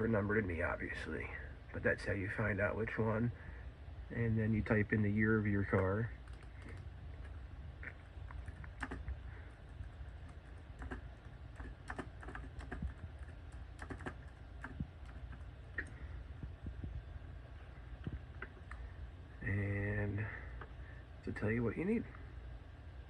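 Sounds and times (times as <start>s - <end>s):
low background hum: 0.0s - 23.0s
keyboard keys clicking: 5.7s - 6.9s, 8.3s - 9.1s, 10.2s - 15.9s.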